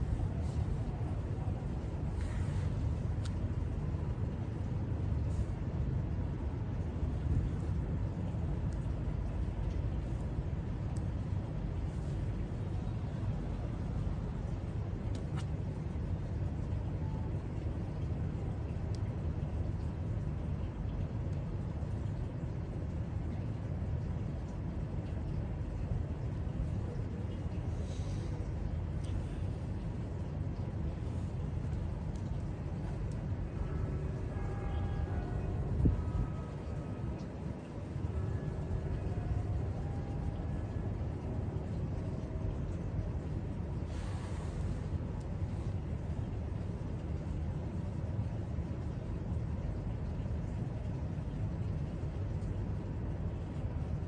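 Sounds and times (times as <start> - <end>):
low rumbling background noise: 0.0 - 54.0
faint light ticks: 2.1 - 4.3, 7.0 - 17.2, 17.8 - 34.4
faint click: 15.1 - 15.6.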